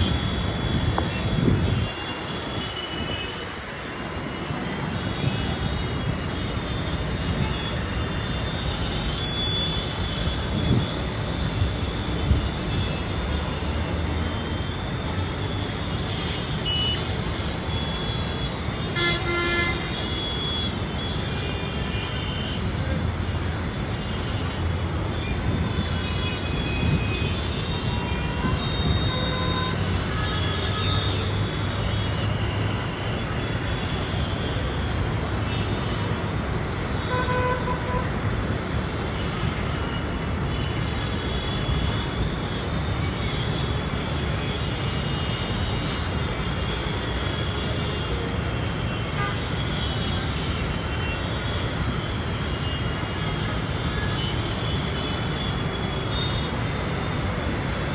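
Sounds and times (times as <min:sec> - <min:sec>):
road traffic noise: 0:00.0 - 0:57.9
vehicle horn toots: 0:37.0 - 0:38.1.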